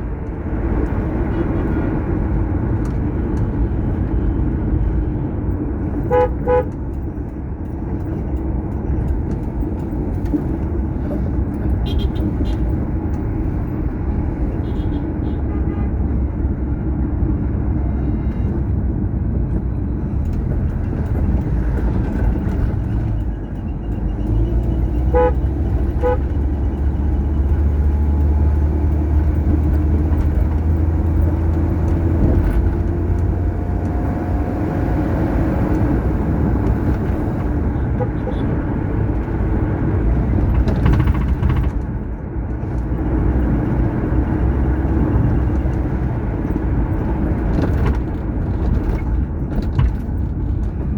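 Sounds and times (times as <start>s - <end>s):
vehicle engine and tyre rumble: 0.0s - 50.9s
car horn toots: 6.0s - 6.9s, 11.8s - 12.7s, 14.6s - 16.1s, 24.9s - 26.7s, 37.8s - 38.6s.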